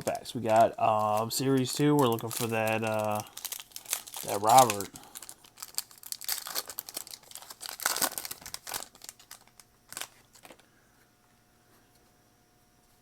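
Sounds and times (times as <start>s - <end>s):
plastic wrapper crinkling and tearing: 0.0s - 10.6s.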